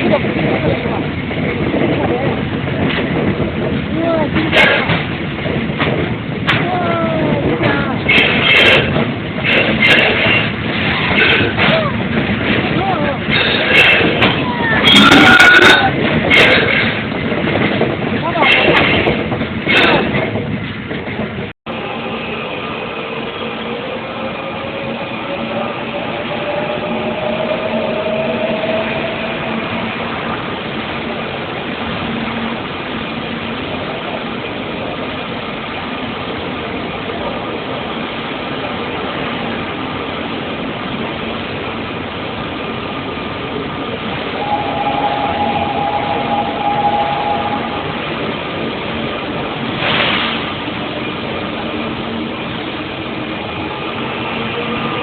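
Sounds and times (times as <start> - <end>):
train rumbling: 0.0 - 55.0
two-note tone: 44.4 - 48.4.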